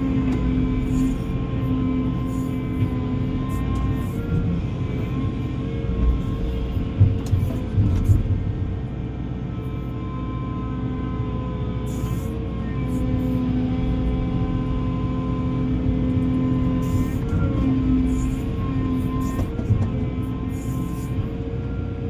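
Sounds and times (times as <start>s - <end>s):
heavy machine engine rumbling: 0.0s - 22.0s.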